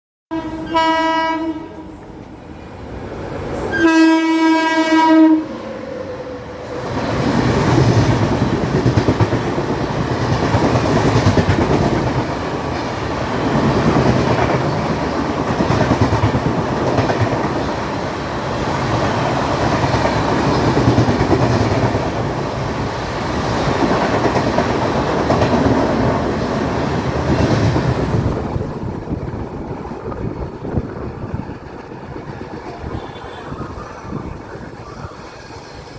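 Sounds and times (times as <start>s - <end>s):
train horn: 0.3s - 2.1s, 3.7s - 5.8s, 32.8s - 33.8s
train wheels clattering over rails: 6.8s - 34.8s.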